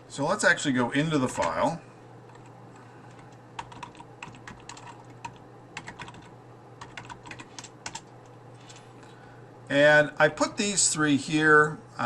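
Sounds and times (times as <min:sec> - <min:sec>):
faint low hum: 0:00.0 - 0:12.0
computer keyboard typing: 0:02.3 - 0:02.5, 0:03.1 - 0:08.8.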